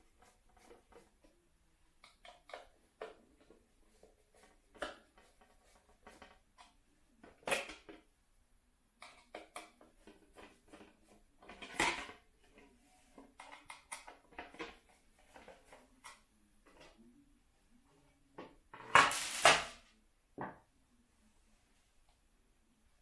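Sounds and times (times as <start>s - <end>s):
plastic parts clicking and knocking: 2.0s - 3.6s, 4.4s - 8.1s, 9.0s - 17.0s.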